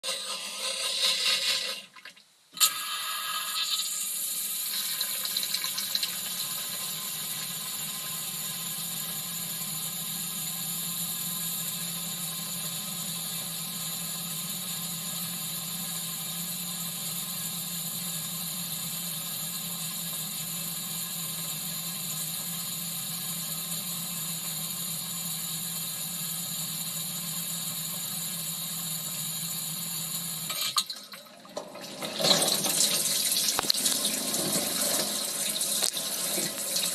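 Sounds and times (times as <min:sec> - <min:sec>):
water rushing in dishwasher: 0:00.0 - 0:08.6, 0:30.4 - 0:36.9
dishwasher pump motor hum: 0:02.9 - 0:36.9.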